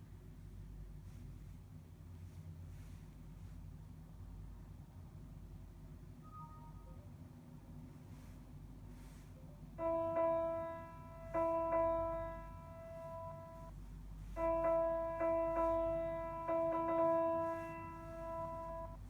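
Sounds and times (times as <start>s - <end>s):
electronic keyboard note: 9.8s - 19.0s.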